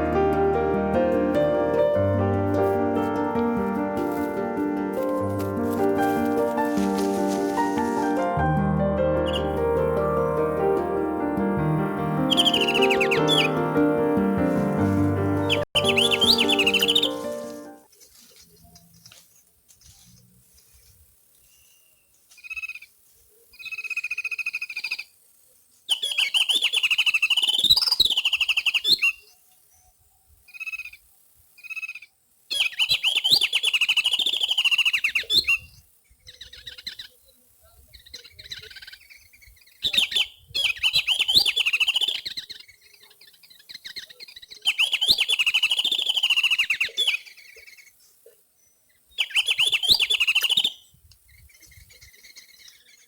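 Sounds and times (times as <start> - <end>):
bird chattering: 15.4 - 17.3.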